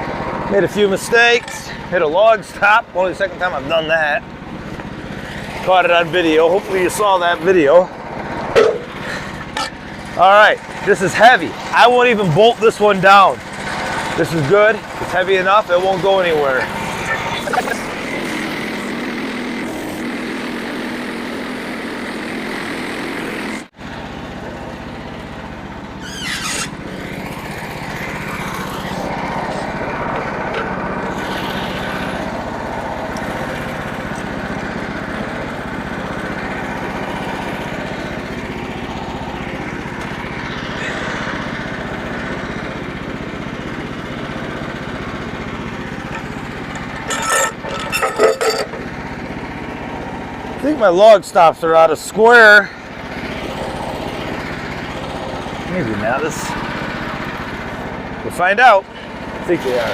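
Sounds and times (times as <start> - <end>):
small gasoline engine running: 0.0 - 59.9
short scrape: 26.0 - 26.8, 47.0 - 48.8.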